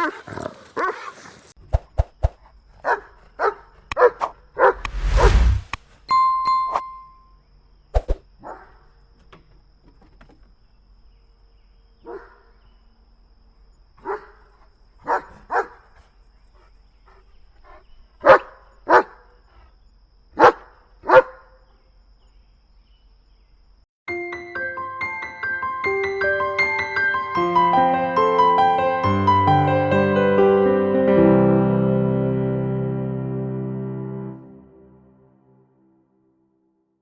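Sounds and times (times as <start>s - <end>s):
dog barking: 2.8s - 3.6s, 12.0s - 12.5s, 14.0s - 14.4s, 15.0s - 15.9s, 18.2s - 19.3s, 20.4s - 21.6s
short steady tone: 4.8s - 7.2s.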